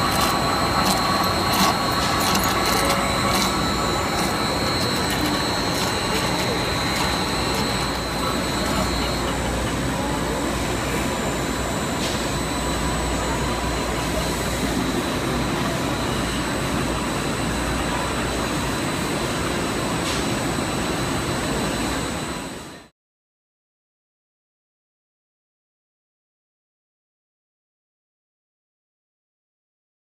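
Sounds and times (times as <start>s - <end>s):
machine noise with high whine: 0.0s - 22.9s.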